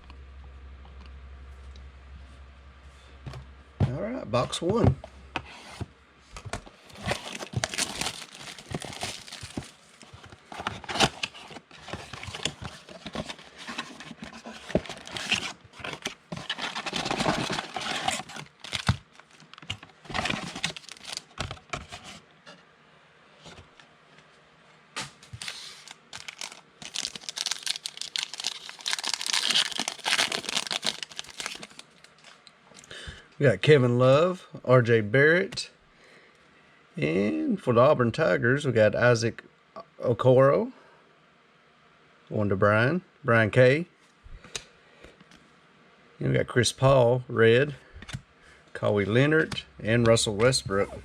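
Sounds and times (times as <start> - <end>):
packaging tearing and crinkling: 6.9 - 21.7, 25.2 - 32.4.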